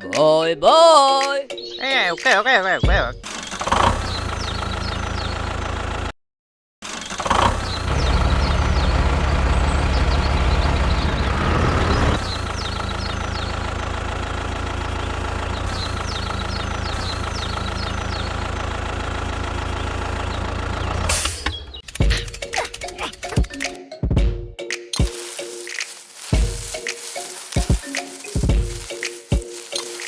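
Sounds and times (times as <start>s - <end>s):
engine idling: 7.7s - 21.2s.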